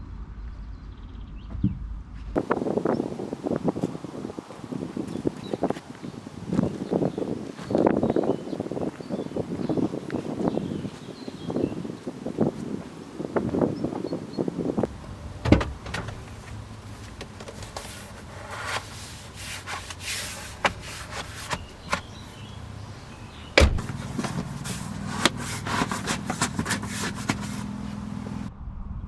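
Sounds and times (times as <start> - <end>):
steady low hum: 9.4 - 28.5
loud knocks: 14.9 - 16.6, 23.5 - 27.5.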